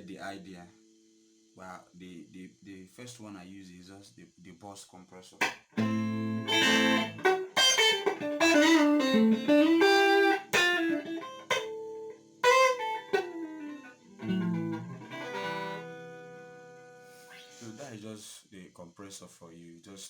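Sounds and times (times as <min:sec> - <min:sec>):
electric guitar chords and notes: 0:05.4 - 0:17.0.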